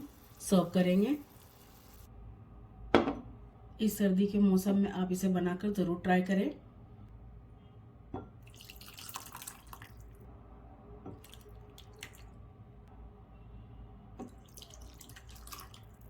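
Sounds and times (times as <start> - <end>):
soup pouring and splashing: 8.4 - 10.2, 11.2 - 12.4, 14.2 - 16.0.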